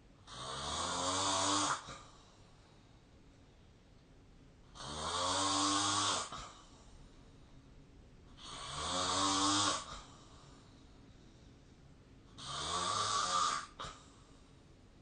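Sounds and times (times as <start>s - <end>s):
person snoring: 0.3s - 2.1s, 4.7s - 6.6s, 8.4s - 10.2s, 12.4s - 14.0s.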